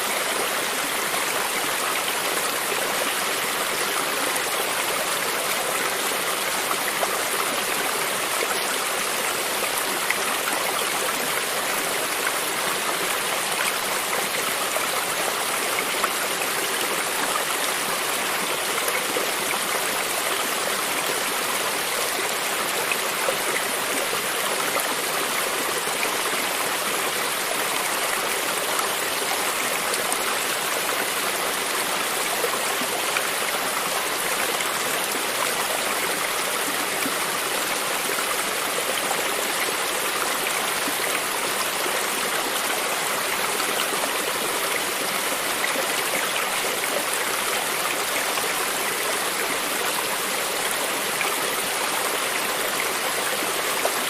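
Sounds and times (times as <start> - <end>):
creek water running over stones: 0.0 - 54.0.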